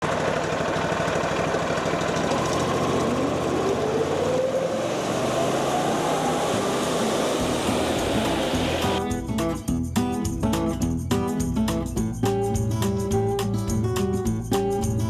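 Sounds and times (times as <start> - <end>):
sawmill engine running: 0.0 - 9.0.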